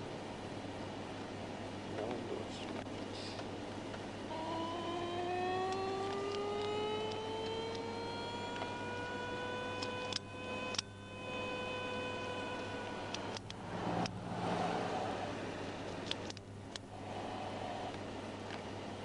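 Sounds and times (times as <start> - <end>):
vehicle engine accelerating: 4.3 - 18.0
sharp clicks: 9.8 - 10.9, 13.1 - 14.2, 15.9 - 16.9.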